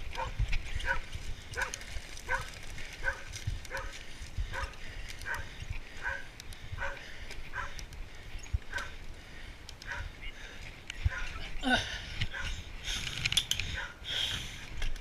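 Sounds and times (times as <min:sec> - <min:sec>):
dog barking: 0:00.2 - 0:01.0, 0:01.6 - 0:03.9, 0:04.5 - 0:07.8, 0:09.9 - 0:10.1, 0:11.1 - 0:11.4, 0:12.3 - 0:12.6, 0:13.8 - 0:14.0.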